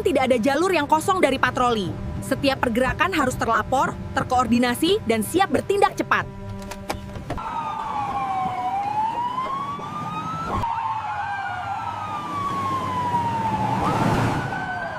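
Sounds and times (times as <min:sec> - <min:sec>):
police siren wailing: 0:07.4 - 0:14.9.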